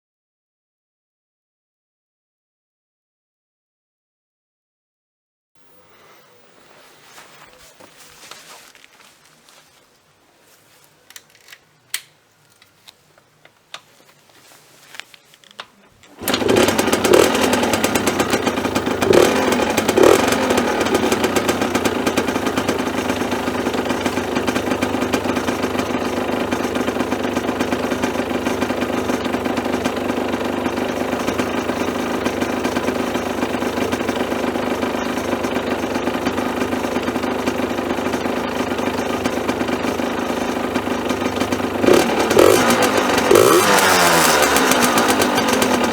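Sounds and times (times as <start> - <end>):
two-stroke engine revving and idling: 16.1 - 45.9.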